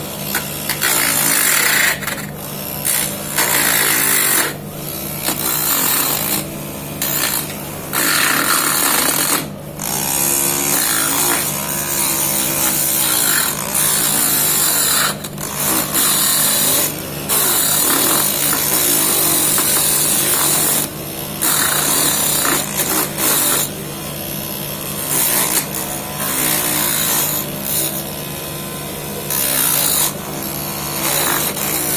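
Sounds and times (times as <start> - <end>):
lathe motor running: 0.0 - 25.3.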